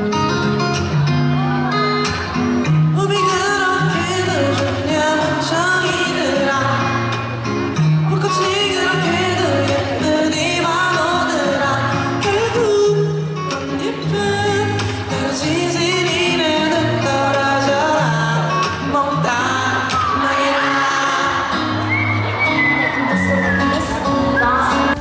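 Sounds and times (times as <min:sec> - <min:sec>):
guitar: 0:00.0 - 0:25.0
woman singing: 0:03.0 - 0:07.1, 0:08.1 - 0:21.5.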